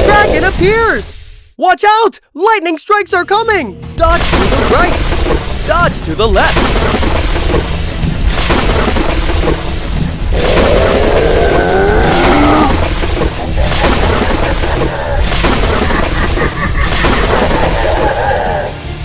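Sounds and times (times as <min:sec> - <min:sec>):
dragon roar: 0:00.0 - 0:00.7, 0:10.3 - 0:16.0, 0:17.2 - 0:19.0
cartoon lightning and thunder: 0:00.0 - 0:01.5, 0:04.0 - 0:18.7
background music: 0:00.0 - 0:19.0.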